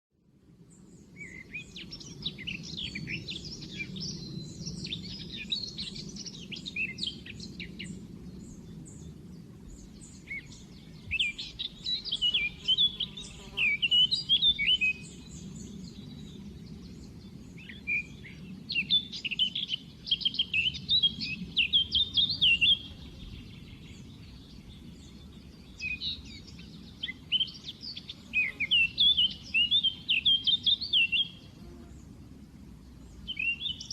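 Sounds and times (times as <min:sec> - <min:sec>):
songbird twittering: 0:01.0 - 0:32.0, 0:33.0 - 0:33.9.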